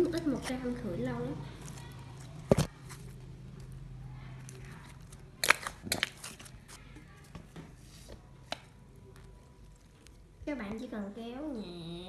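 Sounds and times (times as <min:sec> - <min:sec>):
slime squished by hand: 0:01.5 - 0:07.3.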